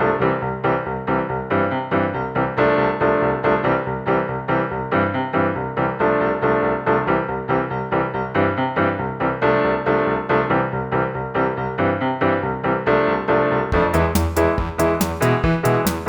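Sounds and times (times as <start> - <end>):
keyboard playing even notes: 13.7 - 16.0.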